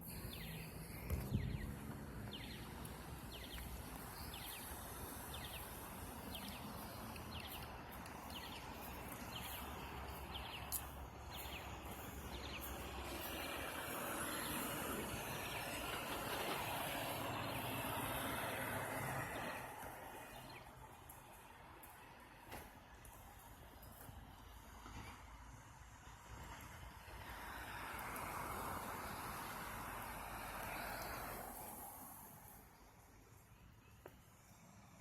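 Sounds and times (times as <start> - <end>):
vehicle engine humming: 0.0 - 20.5
traffic noise: 0.0 - 35.0.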